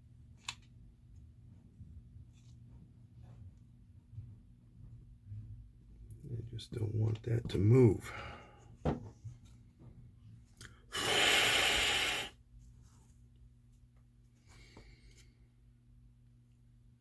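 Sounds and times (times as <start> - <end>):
faint low hum: 0.0 - 10.9
person blowing breath: 10.9 - 12.4.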